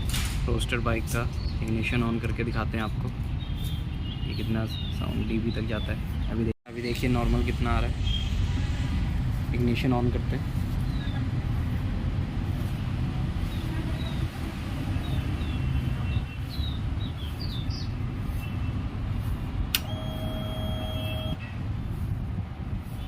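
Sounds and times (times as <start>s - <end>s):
ignition switch click: 19.7s - 20.0s
fuel pump whine: 19.7s - 21.4s.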